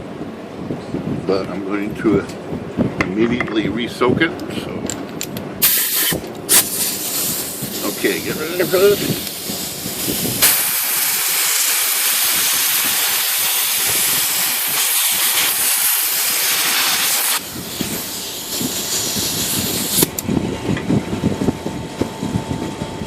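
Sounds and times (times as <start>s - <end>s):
compressed air hissing: 5.6s - 20.3s
low rough running noise: 17.4s - 23.0s.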